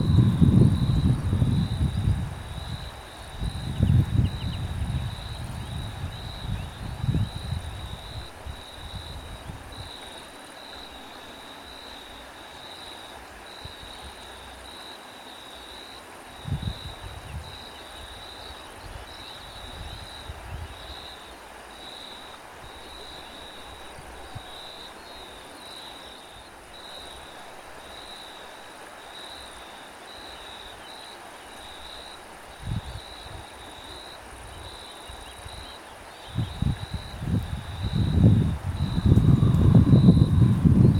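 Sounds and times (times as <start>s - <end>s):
wind buffeting microphone: 0.0s - 10.0s, 16.4s - 18.2s, 18.8s - 21.0s, 32.5s - 33.6s, 36.3s - 40.9s
crickets chirping: 0.0s - 40.9s.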